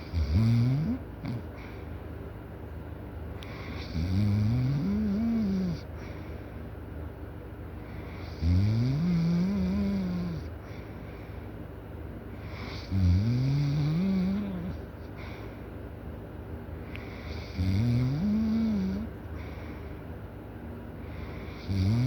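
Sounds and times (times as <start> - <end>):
loud snoring: 0.0 - 1.4, 3.8 - 5.8, 8.2 - 10.4, 12.7 - 14.8, 17.3 - 19.1, 21.6 - 22.0.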